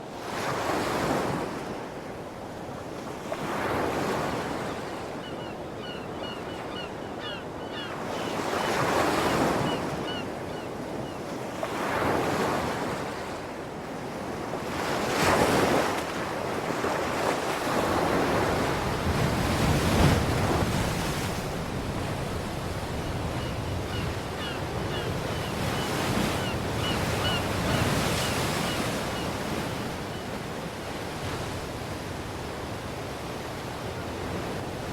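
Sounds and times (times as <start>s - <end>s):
waves washing in: 15.0s - 34.9s.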